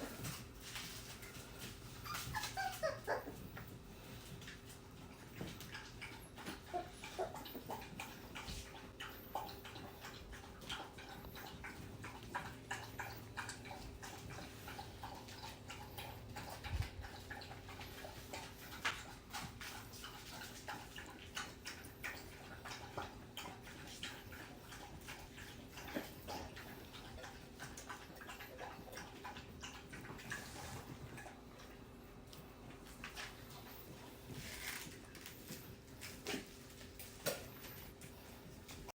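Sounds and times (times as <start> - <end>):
puppies clicking and scratching: 0.0 - 39.0.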